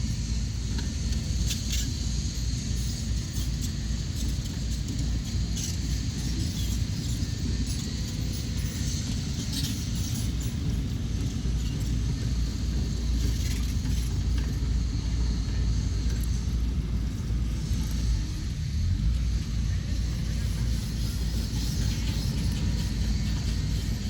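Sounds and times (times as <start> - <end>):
diesel engine low rumble: 0.0 - 24.0
faint scattered rattles: 0.8 - 18.4.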